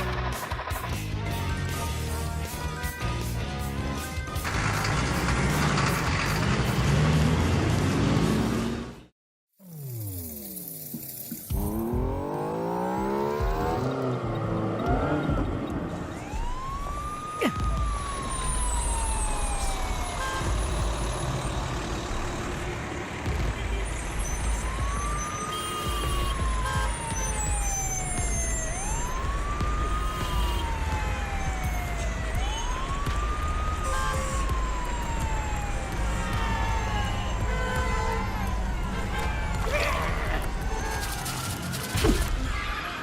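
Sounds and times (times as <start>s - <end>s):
cartoon siren wailing: 16.1s - 20.8s, 24.4s - 41.6s.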